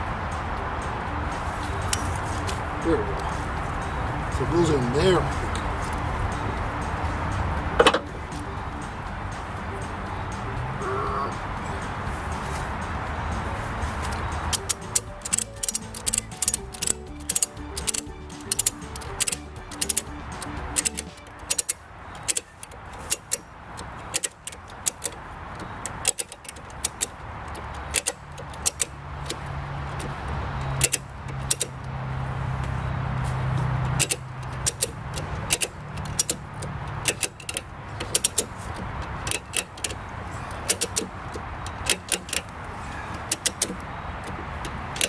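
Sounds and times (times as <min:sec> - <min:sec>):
low engine-like hum: 0:00.0 - 0:24.2
ratchet pawl clicking: 0:14.0 - 0:32.7, 0:33.6 - 0:42.6, 0:43.2 - 0:45.0.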